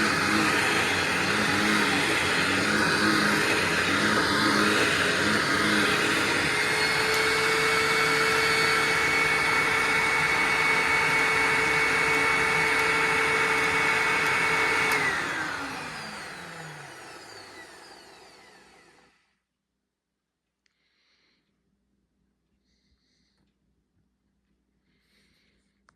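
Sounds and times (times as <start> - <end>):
vacuum motor winding down: 0.0 - 19.2
vacuum cleaner whining: 0.0 - 19.3.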